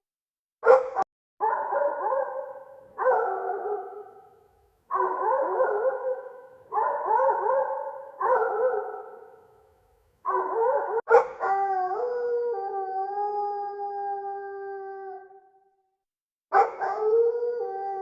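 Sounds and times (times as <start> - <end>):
dog whining and howling: 10.3 - 15.6, 16.5 - 18.0.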